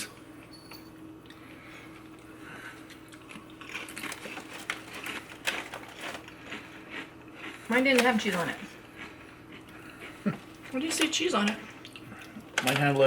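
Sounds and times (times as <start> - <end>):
potato chips crunching: 2.8 - 10.8.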